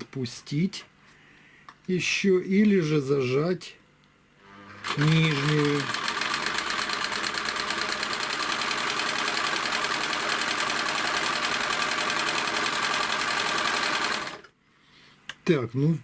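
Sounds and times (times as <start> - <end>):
sewing machine stitching: 4.5 - 14.5.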